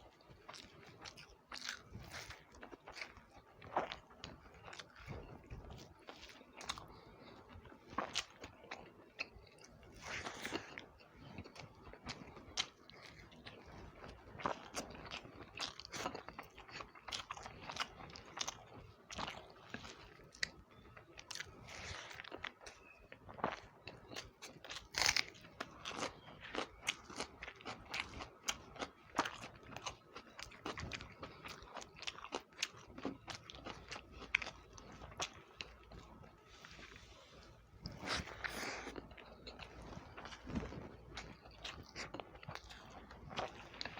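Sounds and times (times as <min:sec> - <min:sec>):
person chewing food: 0:00.0 - 0:43.9.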